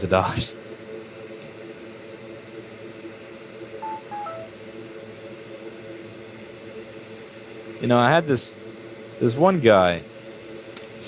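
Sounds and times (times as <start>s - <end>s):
short electronic beeps: 3.8s - 4.5s.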